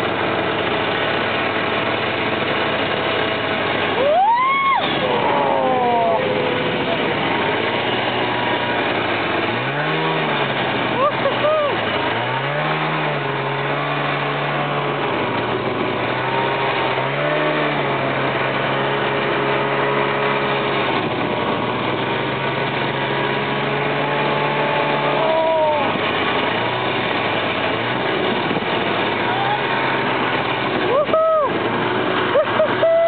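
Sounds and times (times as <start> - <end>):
snowmobile engine running: 0.0 - 33.0.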